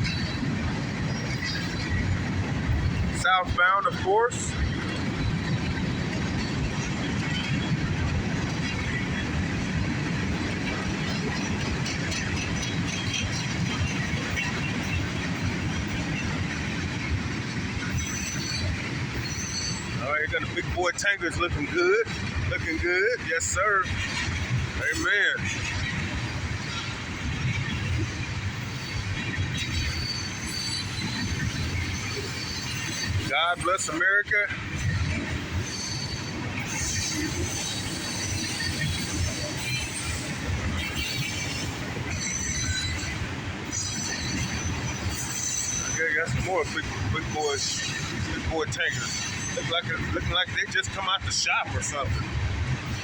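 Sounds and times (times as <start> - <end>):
freight train rolling past: 0.0 - 53.0.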